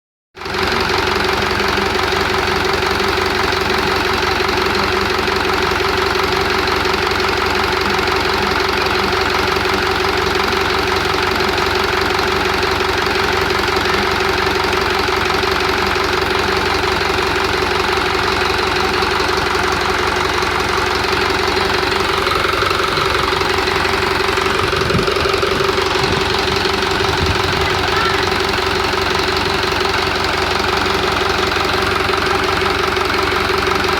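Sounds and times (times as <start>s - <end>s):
truck engine idling: 0.4s - 33.9s.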